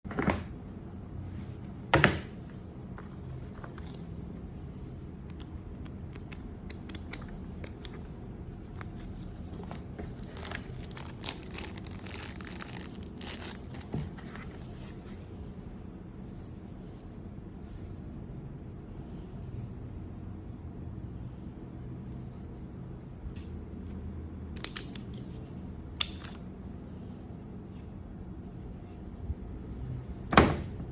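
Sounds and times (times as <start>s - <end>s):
steady low hum: 0.1s - 30.9s
packaging rustling and crinkling: 7.1s - 14.8s.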